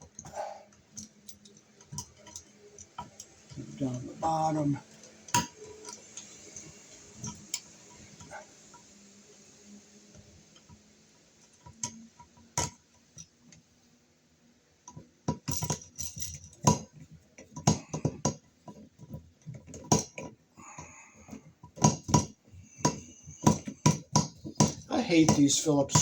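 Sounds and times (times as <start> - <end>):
metal clicks and rattles: 0.0 - 8.8, 14.9 - 26.0.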